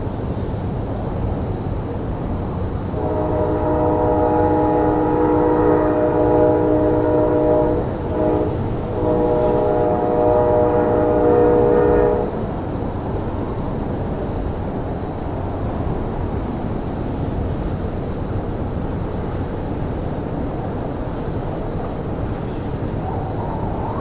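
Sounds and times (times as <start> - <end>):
locomotive air horn blasts: 3.0 - 12.4.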